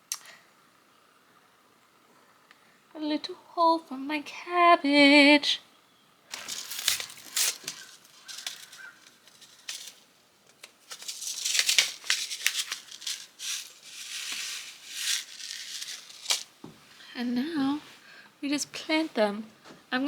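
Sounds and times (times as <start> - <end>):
hands handling seeds and plastic tray: 6.3 - 16.8.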